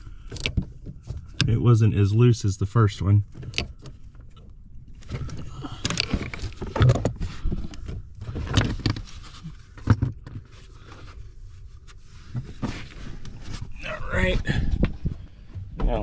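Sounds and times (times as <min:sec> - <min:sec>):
rustling: 0:04.9 - 0:13.8.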